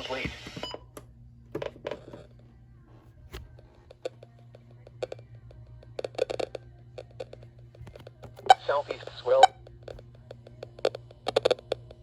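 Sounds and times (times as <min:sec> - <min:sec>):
synthesized voice from radio: 0:00.0 - 0:00.6, 0:08.4 - 0:09.6
radio crackles and clicks: 0:00.0 - 0:00.8, 0:06.0 - 0:11.7
steady low hum: 0:00.0 - 0:12.0.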